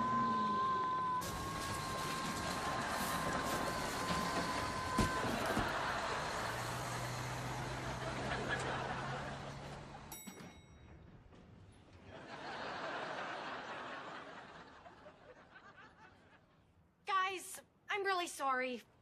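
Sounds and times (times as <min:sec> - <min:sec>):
audience laughter: 0:01.6 - 0:10.1, 0:12.1 - 0:16.6
ringing click: 0:10.1 - 0:10.9.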